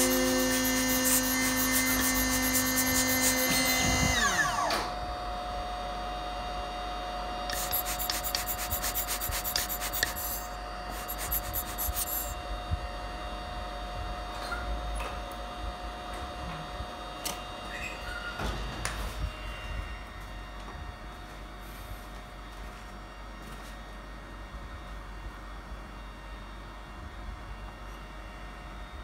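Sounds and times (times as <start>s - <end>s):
scratchy grinding: 0.0s - 4.0s, 7.6s - 12.4s
faint steady whine: 0.0s - 4.6s
milling spindle whine: 0.0s - 4.7s.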